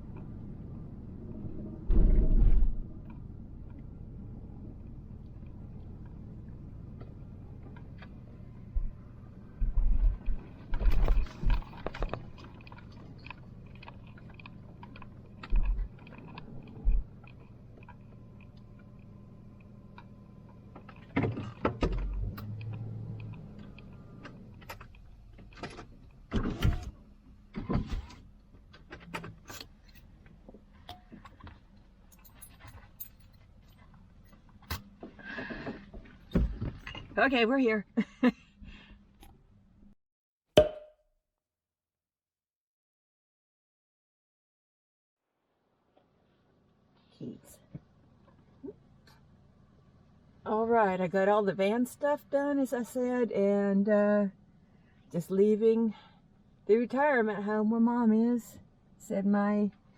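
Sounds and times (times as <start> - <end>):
engine and road hum: 0.0 - 40.0, 45.4 - 59.9.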